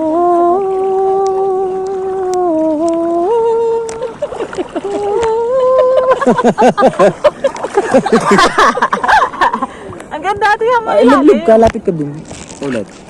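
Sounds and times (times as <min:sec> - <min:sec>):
person humming or singing: 0:00.0 - 0:04.2, 0:04.8 - 0:06.3.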